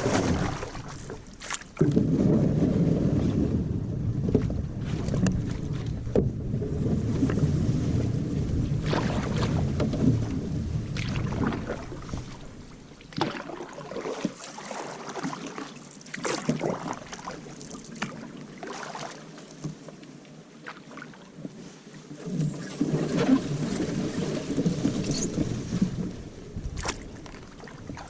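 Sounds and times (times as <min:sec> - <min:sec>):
paddle splashing in water: 0:00.0 - 0:20.0, 0:20.6 - 0:28.0
wind rumble on microphone: 0:01.8 - 0:13.0, 0:22.2 - 0:28.0.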